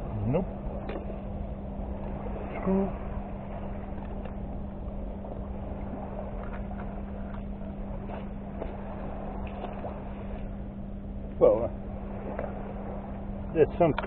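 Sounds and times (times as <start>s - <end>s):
low motor drone: 0.0s - 14.0s
faint clicks and scrapes in mud: 6.3s - 10.5s.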